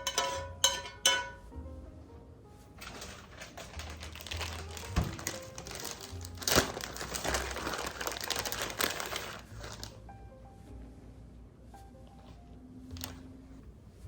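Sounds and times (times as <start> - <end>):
kitchen handling clicks and rustling: 0.0 - 1.4, 2.8 - 5.9.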